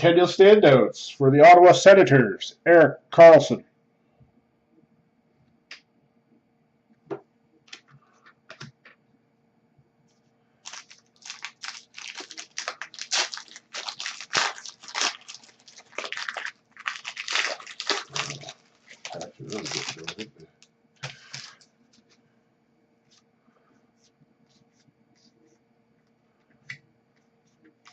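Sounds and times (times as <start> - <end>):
plastic wrapper crinkling: 10.6 - 20.3, 21.0 - 21.7.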